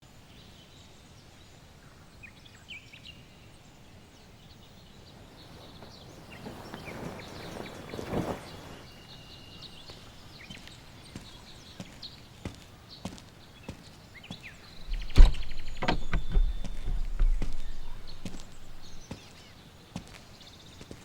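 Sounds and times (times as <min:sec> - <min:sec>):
small birds chirping: 0:04.1 - 0:21.0
low background hiss: 0:14.7 - 0:19.5.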